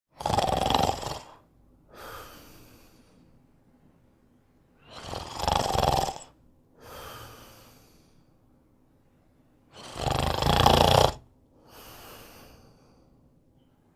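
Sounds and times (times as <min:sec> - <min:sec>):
person snoring: 0:00.1 - 0:03.2, 0:04.8 - 0:08.1, 0:09.7 - 0:13.0.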